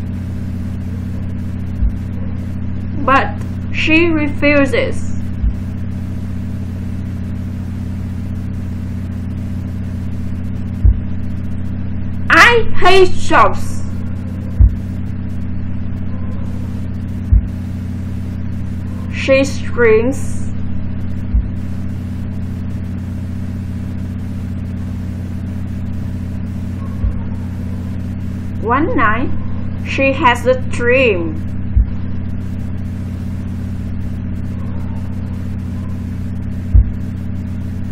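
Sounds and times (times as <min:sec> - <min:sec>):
steady low hum: 0:00.0 - 0:37.9
soft low thump: 0:01.7 - 0:02.2, 0:05.3 - 0:05.8, 0:10.7 - 0:11.3, 0:14.5 - 0:15.1, 0:17.1 - 0:17.7, 0:21.2 - 0:21.8, 0:26.7 - 0:27.5, 0:31.6 - 0:32.6, 0:36.7 - 0:37.1
short low thump: 0:10.8 - 0:11.2, 0:14.5 - 0:15.0, 0:17.2 - 0:17.6, 0:21.3 - 0:21.8, 0:27.0 - 0:27.5, 0:36.7 - 0:37.1.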